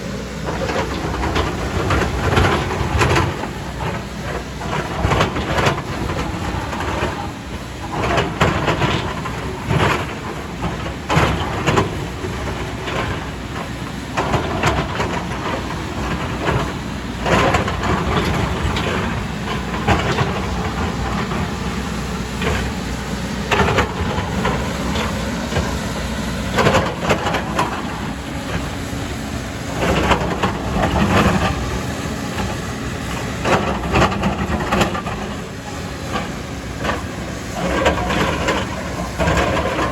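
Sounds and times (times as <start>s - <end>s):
excavator diesel engine running: 0.0s - 39.9s
bucket clanking and scraping rock: 14.2s - 39.9s.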